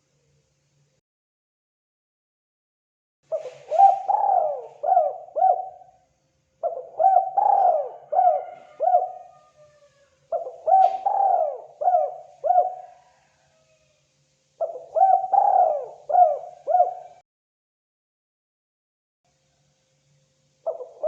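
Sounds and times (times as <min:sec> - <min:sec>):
dove cooing: 0:03.3 - 0:06.0, 0:06.6 - 0:13.7, 0:14.6 - 0:17.2, 0:20.6 - 0:21.0.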